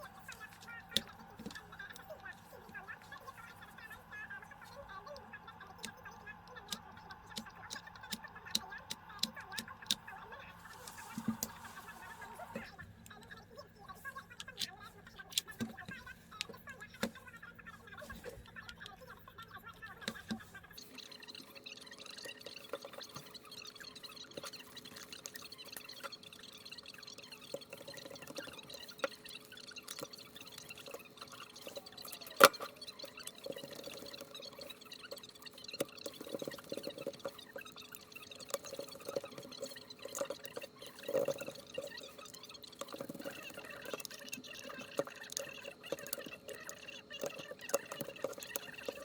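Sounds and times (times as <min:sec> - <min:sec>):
faint steady hum: 0:00.0 - 0:49.0
small clicks and ticks: 0:00.0 - 0:49.0.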